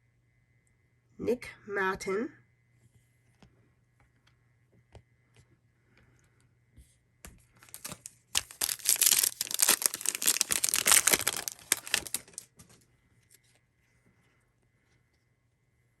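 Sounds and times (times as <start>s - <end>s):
plastic wrapper tearing and crackling: 7.6s - 12.8s
wrapper rustling and handling clicks: 7.6s - 13.4s.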